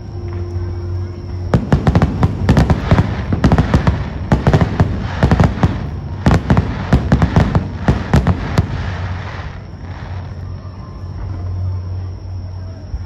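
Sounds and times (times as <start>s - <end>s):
continuous low rumble: 0.0s - 13.0s
fireworks bangs and crackles: 1.4s - 10.5s.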